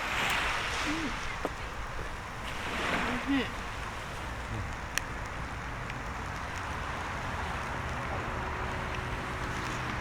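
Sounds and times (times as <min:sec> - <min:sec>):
surf rushing: 0:00.0 - 0:05.6
wind on the shore: 0:00.0 - 0:10.0.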